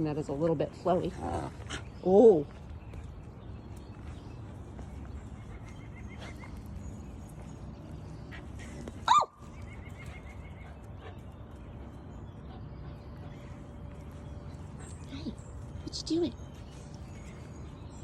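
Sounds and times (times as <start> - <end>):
puppy yipping: 9.0 - 9.4.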